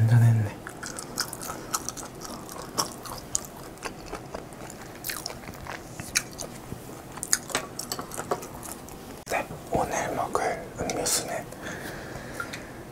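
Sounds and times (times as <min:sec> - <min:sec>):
chewing food: 0:00.6 - 0:09.3.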